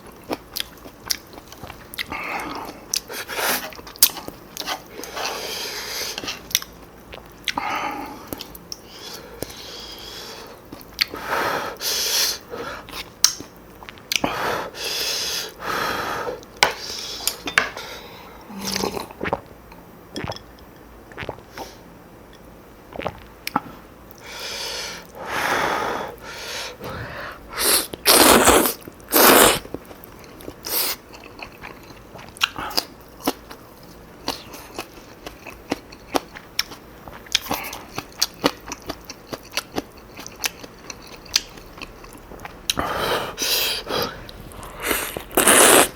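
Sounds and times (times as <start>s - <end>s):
noodle slurping: 27.5s - 29.6s, 42.7s - 45.9s
wet chewing: 27.9s - 45.9s.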